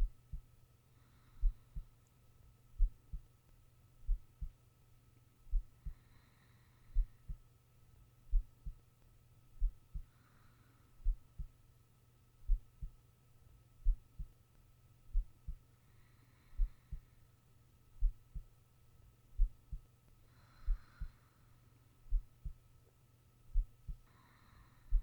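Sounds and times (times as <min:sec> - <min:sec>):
heartbeat thumps: 0:00.0 - 0:00.4, 0:01.4 - 0:01.9, 0:02.8 - 0:03.2, 0:04.1 - 0:04.6, 0:05.5 - 0:06.0, 0:07.0 - 0:07.4, 0:08.3 - 0:08.8, 0:09.6 - 0:10.1, 0:11.0 - 0:11.5, 0:12.4 - 0:13.0, 0:13.8 - 0:14.3, 0:15.1 - 0:15.6, 0:18.0 - 0:18.5, 0:19.4 - 0:19.8, 0:22.1 - 0:22.6, 0:23.5 - 0:24.1
soft breaths: 0:00.0 - 0:03.5, 0:05.5 - 0:11.8, 0:13.8 - 0:25.0
faint steady hum: 0:00.0 - 0:25.0.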